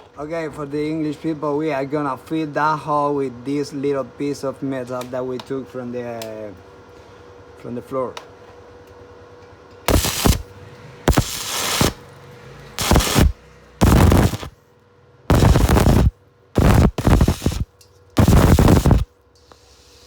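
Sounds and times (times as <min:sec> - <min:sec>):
arc welder crackling: 0:09.9 - 0:10.5, 0:11.1 - 0:12.0, 0:12.8 - 0:14.5, 0:15.3 - 0:19.1.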